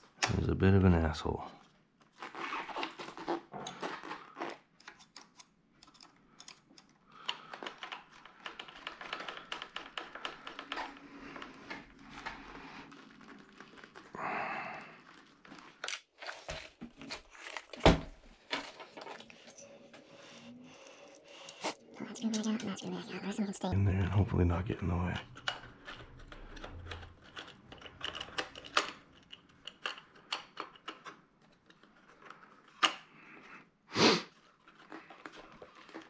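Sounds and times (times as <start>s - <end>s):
small tools clicking and tapping: 4.8s - 11.8s, 25.2s - 33.0s.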